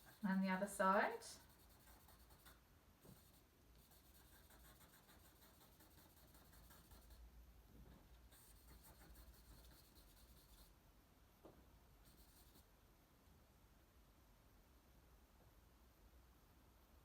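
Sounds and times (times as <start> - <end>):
charcoal scratching on paper: 0.0 - 0.5, 1.4 - 7.2, 8.2 - 10.7, 12.1 - 12.7.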